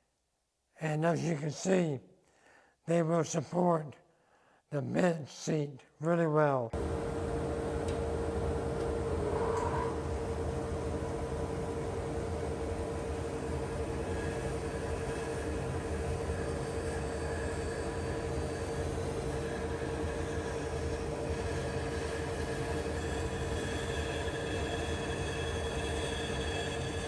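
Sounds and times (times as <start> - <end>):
machine drone: 6.8 - 27.0.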